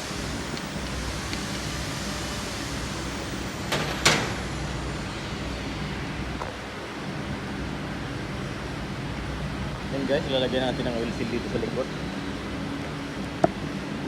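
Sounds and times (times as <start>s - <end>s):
sharp hiss of air: 0.0s - 6.8s
workshop hum: 0.0s - 14.0s.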